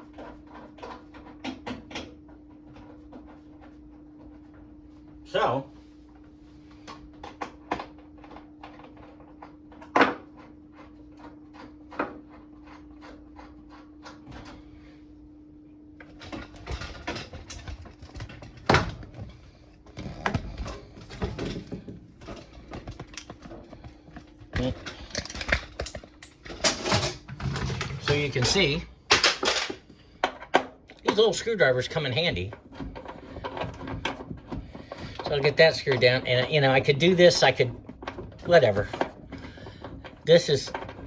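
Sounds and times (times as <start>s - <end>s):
hardware clattering and scraping: 16.0s - 41.0s.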